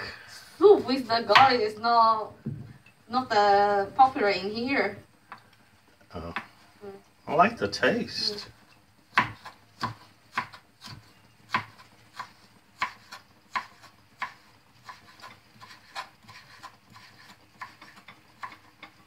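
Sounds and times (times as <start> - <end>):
knife chopping on wooden board: 1.3 - 1.6, 9.1 - 19.0.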